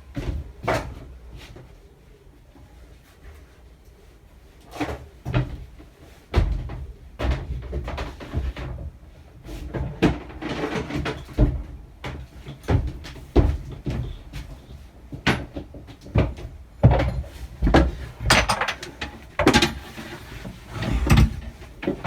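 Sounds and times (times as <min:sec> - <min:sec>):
tools knocking and scraping: 0:16.8 - 0:22.0.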